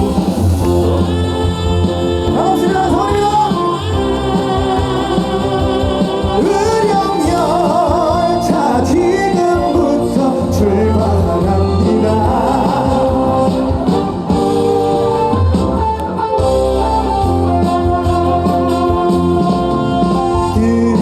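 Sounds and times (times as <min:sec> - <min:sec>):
live band playing over pa: 0:00.0 - 0:21.0.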